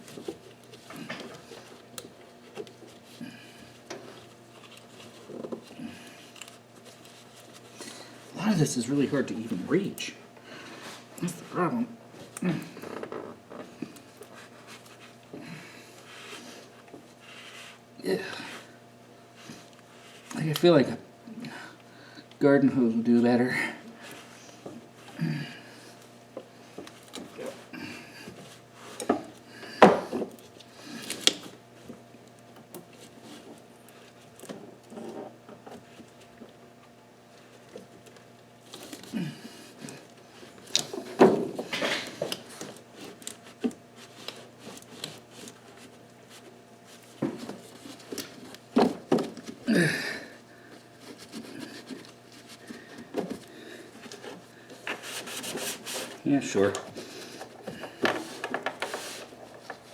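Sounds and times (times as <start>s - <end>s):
rags rubbing engine parts: 53.8s - 57.6s.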